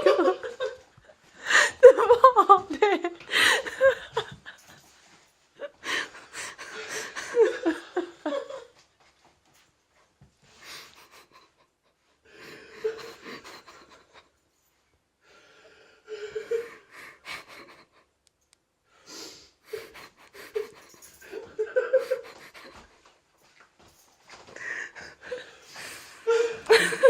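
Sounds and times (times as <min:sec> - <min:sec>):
wheezing laughter: 0:12.4 - 0:14.3, 0:19.7 - 0:22.9.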